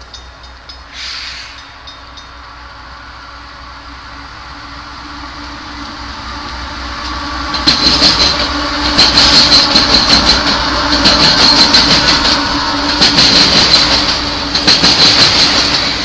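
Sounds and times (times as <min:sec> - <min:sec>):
train wheels clicking over rail joints: 0:00.0 - 0:02.6, 0:06.8 - 0:16.0
train engine: 0:00.0 - 0:16.0.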